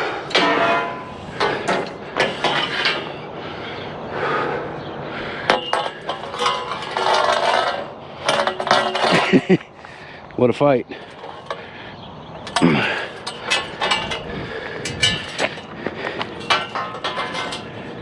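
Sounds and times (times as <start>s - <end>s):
metal poles clanking: 0.0s - 3.3s, 5.4s - 10.0s, 10.9s - 18.0s
metal scraping: 0.0s - 3.3s, 5.5s - 9.6s, 10.9s - 11.8s, 12.4s - 18.0s
metallic ringing: 0.3s - 3.2s.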